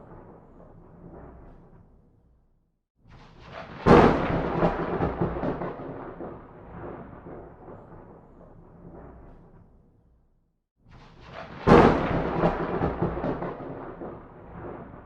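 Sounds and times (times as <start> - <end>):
thunderclap: 0.0 - 2.0, 3.1 - 9.8, 10.9 - 15.0.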